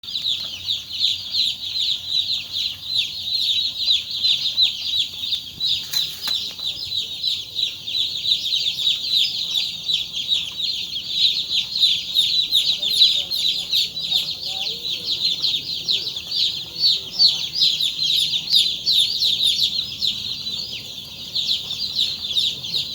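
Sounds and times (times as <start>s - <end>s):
chicks peeping: 0.0s - 22.9s.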